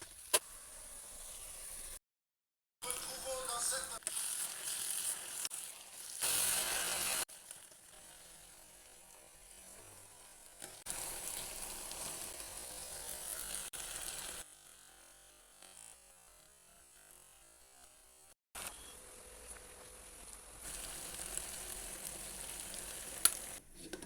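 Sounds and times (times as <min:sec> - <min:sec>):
okra sizzling in a pot: 0:00.0 - 0:02.0, 0:02.8 - 0:14.5, 0:19.4 - 0:23.6.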